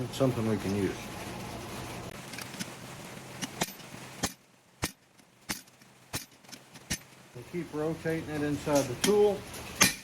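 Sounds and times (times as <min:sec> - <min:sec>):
steady hiss and hum: 0:00.0 - 0:10.0
hammer striking metal tool: 0:08.8 - 0:10.0.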